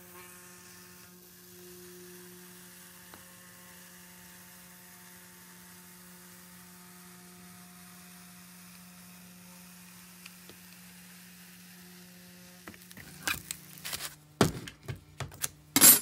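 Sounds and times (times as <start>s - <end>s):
soldering gun electrical hum: 0.0s - 16.0s.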